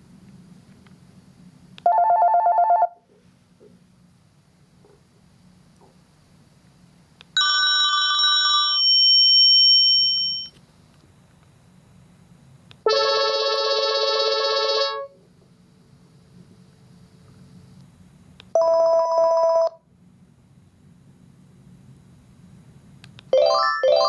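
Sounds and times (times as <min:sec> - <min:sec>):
electronic phone ringtone: 0:01.9 - 0:03.0, 0:07.4 - 0:10.5, 0:23.4 - 0:24.0.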